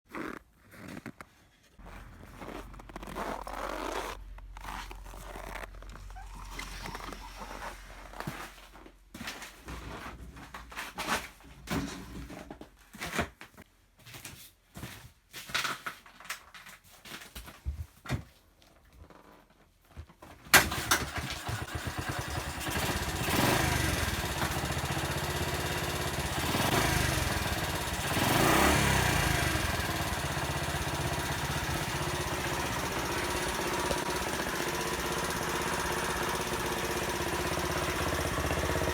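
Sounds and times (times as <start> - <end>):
motorcycle engine revving and idling: 1.8 - 8.5, 20.9 - 38.9.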